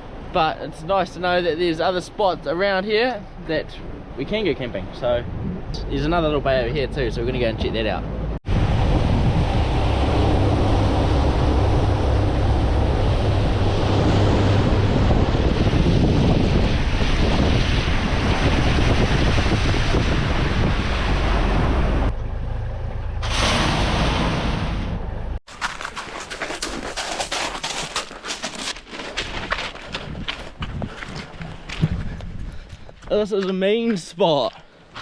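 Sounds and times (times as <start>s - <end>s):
wind buffeting microphone: 3.8s - 22.2s, 29.1s - 33.3s
outboard motor drone: 8.2s - 23.4s
water rushing along hull: 8.4s - 22.1s.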